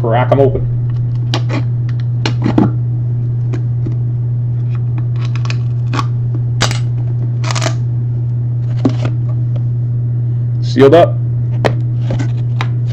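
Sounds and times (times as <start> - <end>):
steady low hum: 0.0 - 12.9
plastic wrap crinkling and ripping: 5.1 - 7.8.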